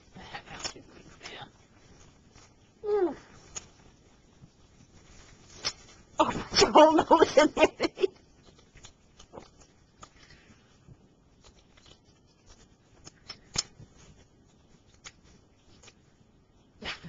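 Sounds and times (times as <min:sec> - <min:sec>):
dog crunching popcorn: 0:08.2 - 0:10.4, 0:11.3 - 0:14.0.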